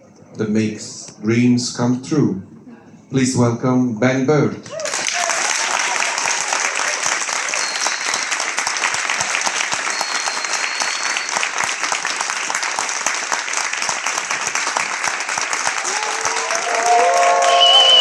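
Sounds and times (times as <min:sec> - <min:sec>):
large audience applauding: 0:04.7 - 0:18.0.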